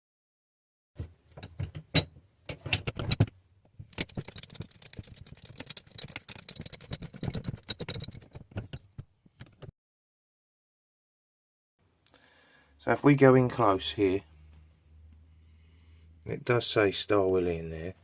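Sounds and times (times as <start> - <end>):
metal wrenches knocking: 1.4 - 9.7
metallic rattling and clinking: 1.4 - 9.7.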